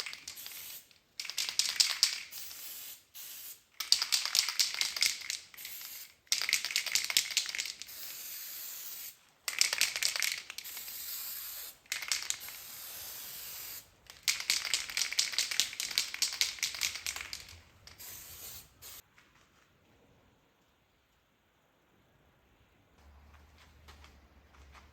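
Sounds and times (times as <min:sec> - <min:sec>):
spray paint hissing: 0:00.0 - 0:19.0.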